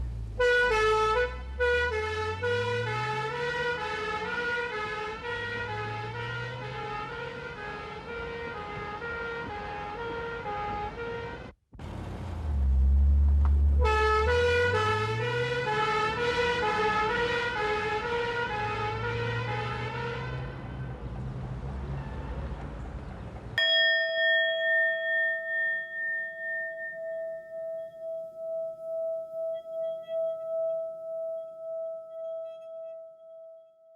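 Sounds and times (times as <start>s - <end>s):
vehicle engine: 0.0s - 8.4s, 11.7s - 23.6s
police siren: 0.4s - 11.4s, 13.8s - 21.0s
bell-like tone ringing: 23.6s - 33.9s.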